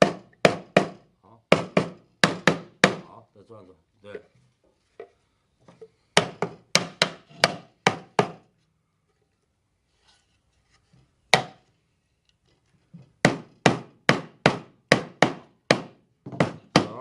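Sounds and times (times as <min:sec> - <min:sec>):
hammer knocking on wooden box: 0:00.0 - 0:03.1, 0:06.2 - 0:08.4, 0:11.3 - 0:11.6, 0:13.2 - 0:17.0.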